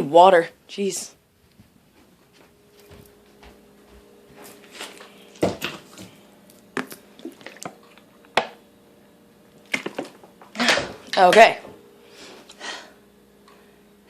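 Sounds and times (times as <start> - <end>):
faint steady hum: 0.0 - 14.0
person gulping water: 6.8 - 8.1.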